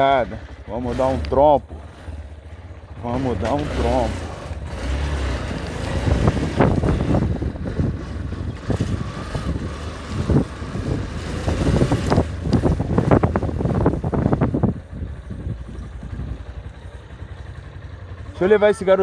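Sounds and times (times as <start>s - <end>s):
vehicle moving: 0.0s - 19.0s
wind buffeting microphone: 2.7s - 16.9s.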